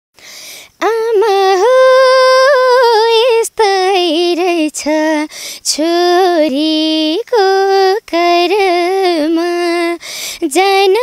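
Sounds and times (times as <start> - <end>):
quick breaths: 0.2 - 0.8, 5.3 - 5.6, 10.0 - 10.4
woman singing unaccompanied: 0.6 - 11.0.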